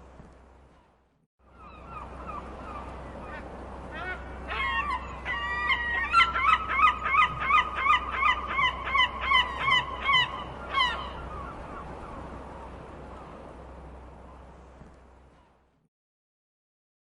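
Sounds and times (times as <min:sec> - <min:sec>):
seagull calling: 0:00.7 - 0:13.4.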